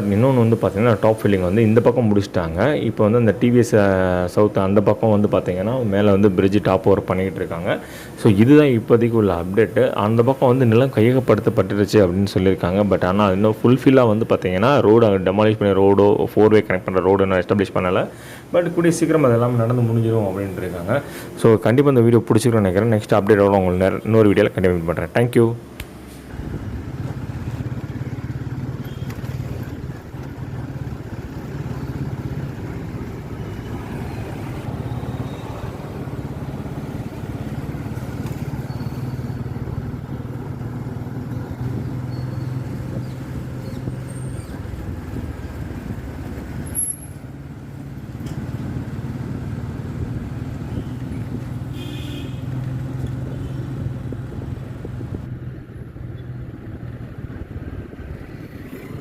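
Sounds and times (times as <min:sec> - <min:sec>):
road noise: 0:00.0 - 0:59.0
vehicle engine running: 0:26.3 - 0:59.0.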